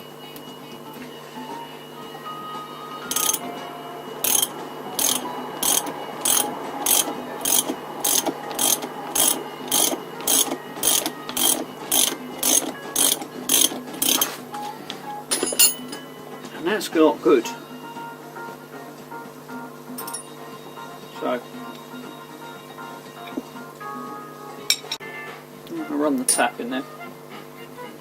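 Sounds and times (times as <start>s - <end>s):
ratchet wrench clicking: 3.1s - 3.4s, 4.2s - 14.4s.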